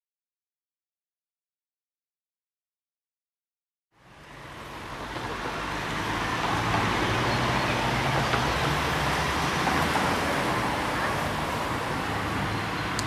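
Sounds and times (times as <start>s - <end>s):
distant road traffic: 3.9s - 13.0s.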